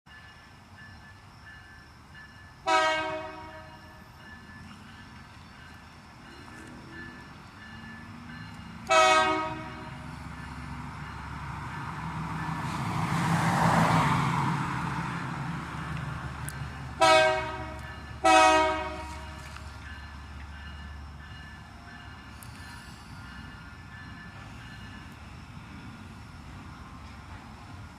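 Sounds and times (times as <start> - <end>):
train rumble: 0.1 - 27.9
locomotive air horn blasts: 2.6 - 3.8, 8.9 - 10.0, 17.0 - 19.6.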